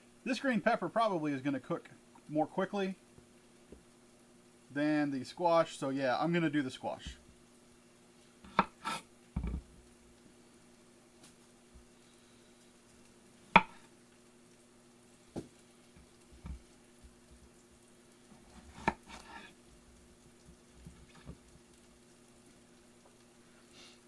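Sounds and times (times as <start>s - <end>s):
low steady hum: 0.0s - 24.0s
knife knocking on cutting board: 9.4s - 9.7s.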